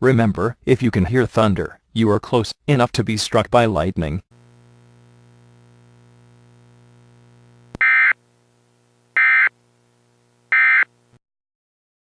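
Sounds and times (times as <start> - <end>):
low steady hum: 3.0 - 11.2
buzzy digital data tones: 9.2 - 9.6.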